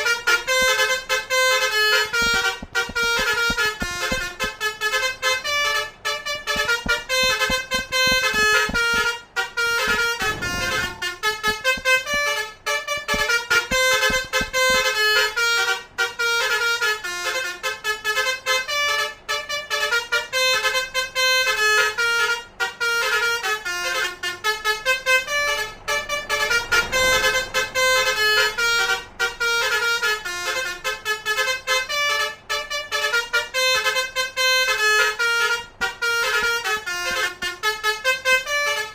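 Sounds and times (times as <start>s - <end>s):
multi-tone horn melody: 0.0s - 38.9s
low pulsing: 9.9s - 15.2s.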